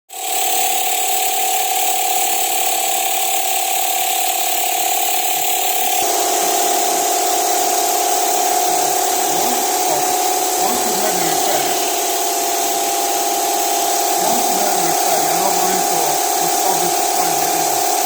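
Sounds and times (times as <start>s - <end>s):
mechanical whine: 0.1s - 18.0s.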